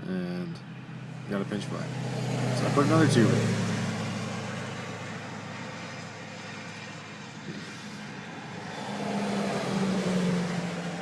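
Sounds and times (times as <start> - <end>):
vehicle engine drone passing: 0.1 - 11.0.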